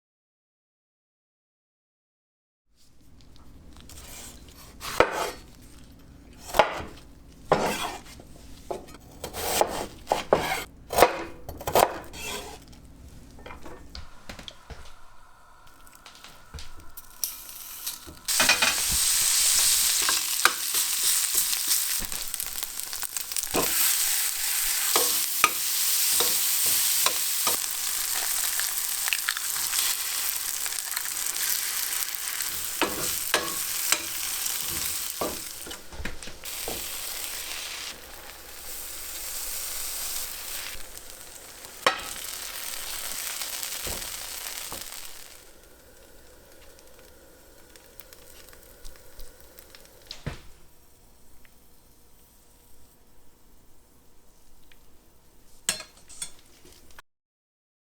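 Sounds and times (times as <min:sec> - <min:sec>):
food sizzling in a pan: 0:06.4 - 0:10.7, 0:13.5 - 0:52.9.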